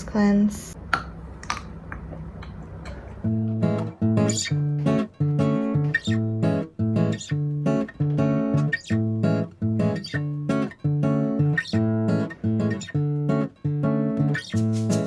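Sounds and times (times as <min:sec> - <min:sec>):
acoustic guitar strumming: 0:03.2 - 0:15.0.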